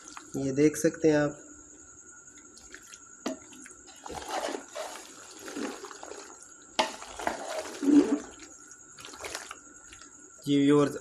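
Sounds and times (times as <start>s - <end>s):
spoon stirring thick sauce: 3.4s - 8.4s.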